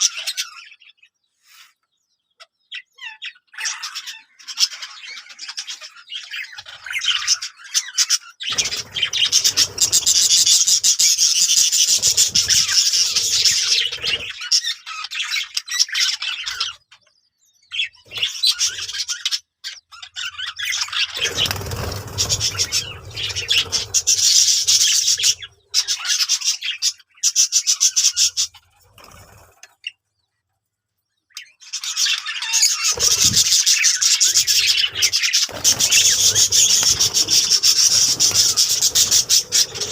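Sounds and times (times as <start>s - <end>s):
budgerigars chattering: 2.3s - 17.1s, 17.7s - 30.0s, 31.3s - 39.9s.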